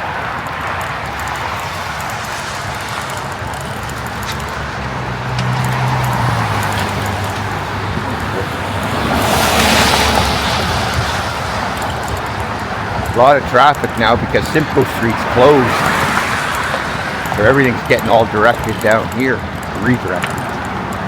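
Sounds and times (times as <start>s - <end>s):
road traffic passing: 0.0s - 21.0s
vehicle engine hum: 0.0s - 21.0s
car whooshing by: 1.1s - 13.2s, 14.9s - 18.9s.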